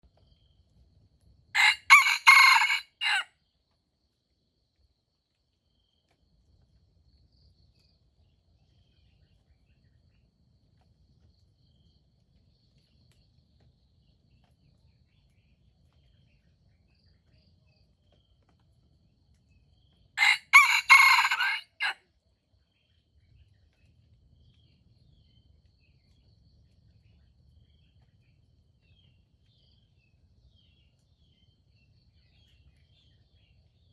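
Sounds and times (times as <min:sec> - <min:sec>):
rooster crowing: 0:01.6 - 0:03.3, 0:20.2 - 0:22.0.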